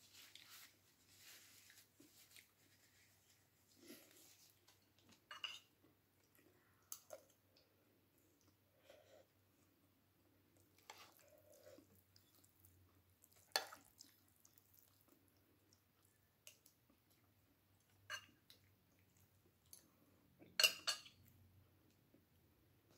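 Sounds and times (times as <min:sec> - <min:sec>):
soft handling noises: 0:00.0 - 0:05.6
cutlery and dishes clinking: 0:05.2 - 0:05.8, 0:20.6 - 0:21.2.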